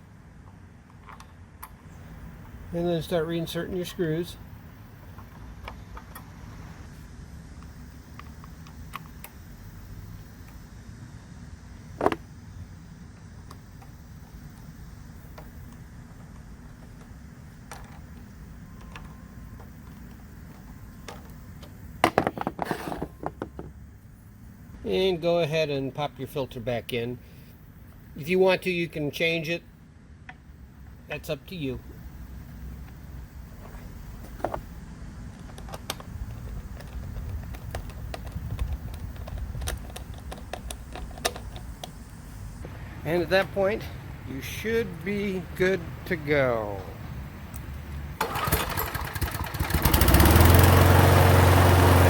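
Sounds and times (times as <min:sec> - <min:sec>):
low steady rumble: 0:00.0 - 0:22.1
plastic parts clicking: 0:35.4 - 0:42.0.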